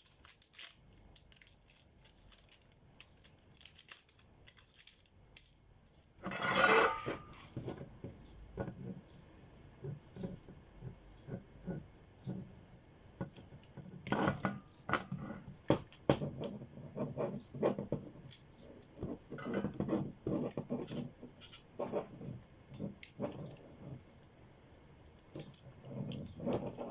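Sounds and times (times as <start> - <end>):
small hard objects clicking: 0.0 - 6.3, 22.5 - 26.9
scraping rustle: 6.2 - 7.8.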